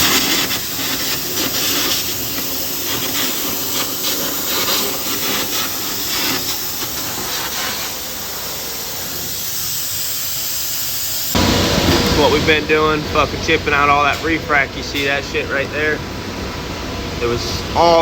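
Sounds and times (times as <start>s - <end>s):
crackling bursts: 0.0s - 12.4s
loud steady hissing: 0.0s - 16.1s.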